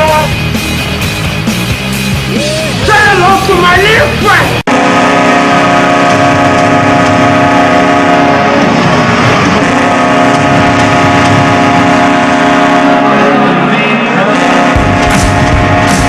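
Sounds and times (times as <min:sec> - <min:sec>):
goal horn long blast: 0:04.6 - 0:16.0.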